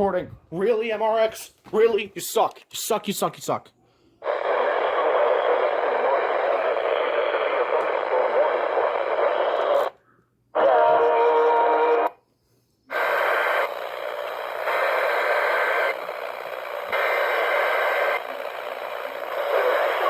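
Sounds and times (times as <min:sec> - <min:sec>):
radio static: 0:04.2 - 0:10.0, 0:10.6 - 0:12.1, 0:12.9 - 0:20.0.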